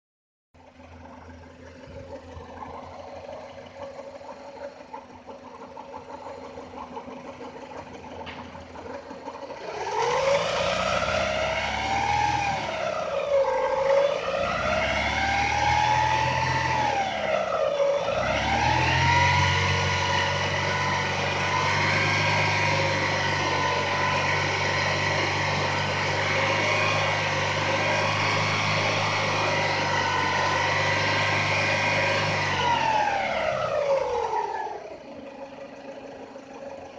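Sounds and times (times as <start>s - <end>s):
car engine idling and revving: 0.6s - 36.9s
engine whistle: 9.6s - 34.9s.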